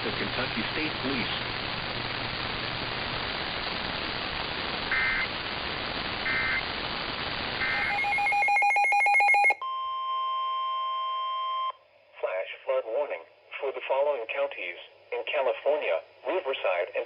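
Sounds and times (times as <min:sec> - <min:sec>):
broadcast channel hiss: 0:00.0 - 0:09.6, 0:12.1 - 0:17.0
pulsing data tones: 0:07.6 - 0:09.6
steady electronic alert tone: 0:07.6 - 0:09.6
two-tone data bursts: 0:07.6 - 0:09.6.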